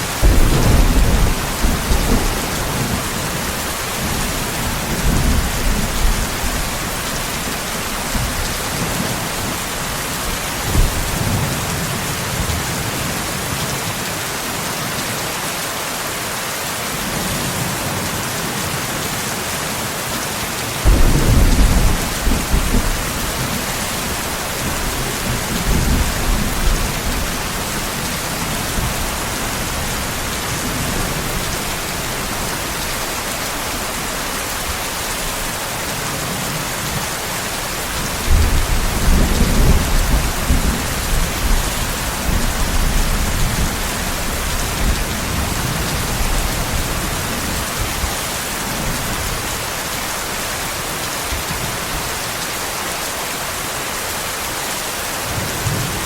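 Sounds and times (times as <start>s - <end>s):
steady rain: 0.0s - 56.0s
thunder rumbling: 0.1s - 11.8s, 20.8s - 34.0s, 37.8s - 48.0s.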